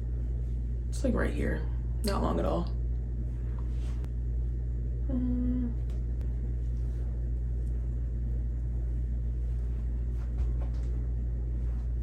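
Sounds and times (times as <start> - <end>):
low background hum: 0.0 - 12.0
woman humming a note: 5.0 - 5.9.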